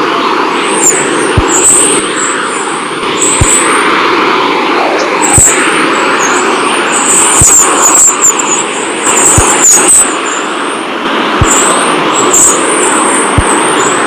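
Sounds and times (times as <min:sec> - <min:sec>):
steady rushing noise: 0:00.0 - 0:14.0
high chirping tones: 0:00.7 - 0:02.3, 0:07.0 - 0:10.2, 0:11.4 - 0:12.6.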